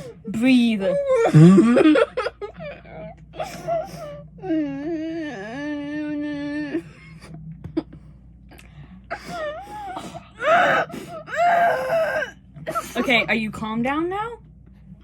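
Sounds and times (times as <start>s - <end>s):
child whimpering: 2.6s - 6.9s.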